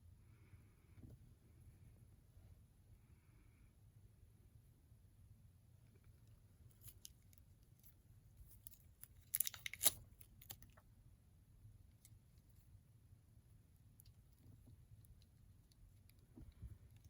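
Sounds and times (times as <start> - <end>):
plastic packaging crinkling: 9.1 - 10.7.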